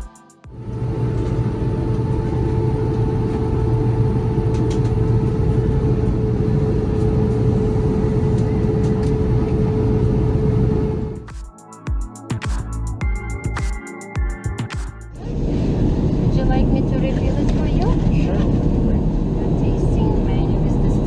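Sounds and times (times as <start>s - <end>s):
jet engines and airflow in cabin: 0.5s - 11.2s, 15.2s - 21.0s.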